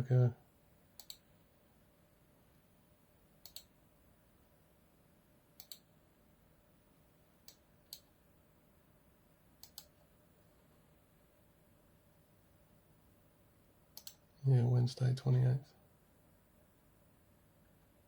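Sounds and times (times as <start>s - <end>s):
computer mouse button clicks: 1.0s - 1.2s, 3.4s - 3.7s, 5.6s - 5.9s, 9.6s - 9.9s, 14.0s - 14.2s.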